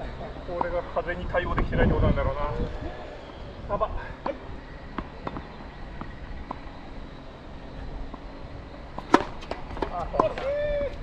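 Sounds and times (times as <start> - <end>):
wind rumbling on microphone: 0.0 - 11.0
tennis racket striking ball: 9.0 - 10.5.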